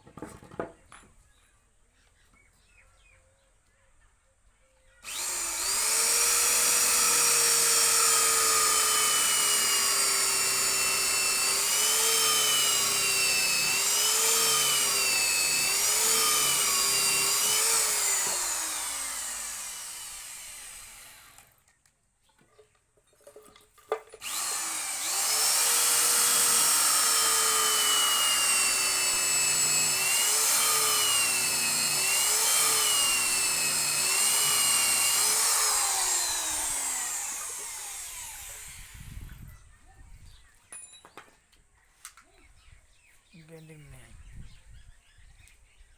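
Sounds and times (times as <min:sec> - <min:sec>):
power tool whining on wood: 0:05.0 - 0:21.7, 0:24.2 - 0:39.6.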